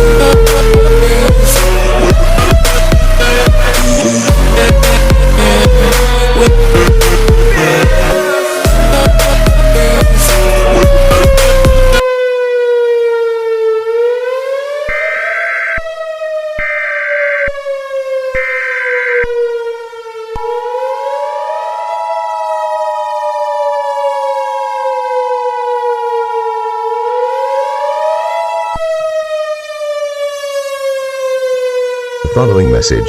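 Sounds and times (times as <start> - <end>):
civil defense siren wailing: 0.0 - 33.0
two-tone attention signal: 18.4 - 19.2
warbling data tones: 18.4 - 19.2.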